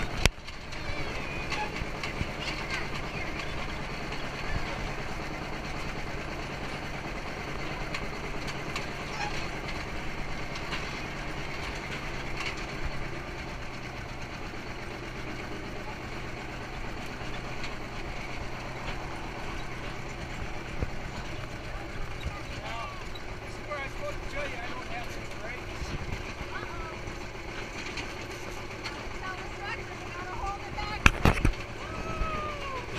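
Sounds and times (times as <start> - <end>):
tractor engine running: 0.0 - 32.9.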